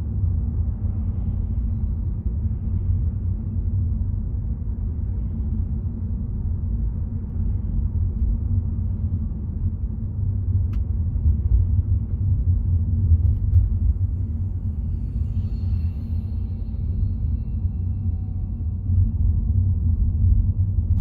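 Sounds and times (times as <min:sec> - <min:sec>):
car road rumble: 0:05.7 - 0:14.8, 0:17.6 - 0:21.0.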